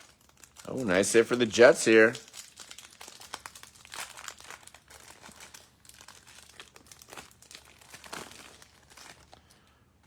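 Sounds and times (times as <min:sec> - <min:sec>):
plastic packaging crinkling: 0:00.0 - 0:10.0.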